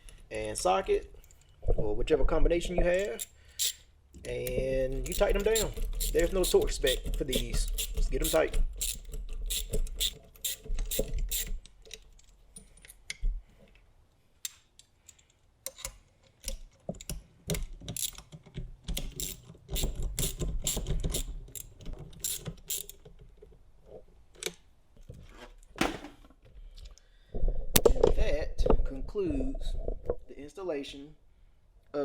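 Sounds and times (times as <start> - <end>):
socket ratchet clicking: 2.9 - 11.6, 17.5 - 23.0.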